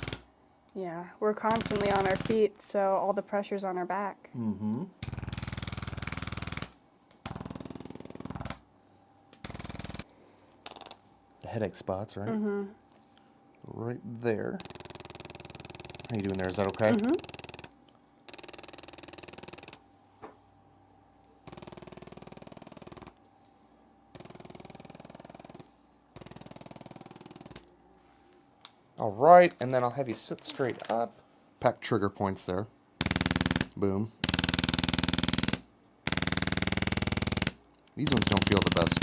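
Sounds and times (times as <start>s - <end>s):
massage gun pulsing: 0.0s - 0.3s, 1.5s - 2.5s, 14.4s - 19.8s, 21.4s - 23.2s, 24.1s - 27.7s, 33.0s - 39.0s.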